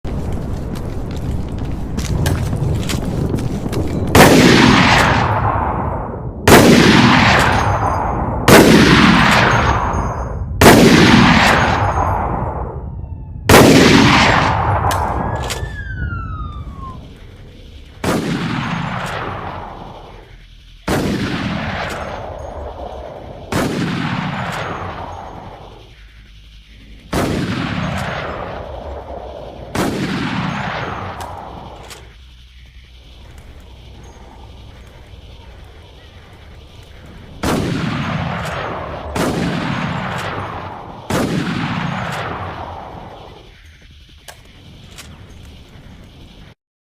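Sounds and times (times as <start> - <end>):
rifle shots: 3.8 - 12.6, 13.5 - 26.0, 26.9 - 32.5, 33.1 - 43.5
rolling gunshot echo: 4.1 - 12.3, 13.5 - 20.2, 20.9 - 25.5, 37.0 - 43.2.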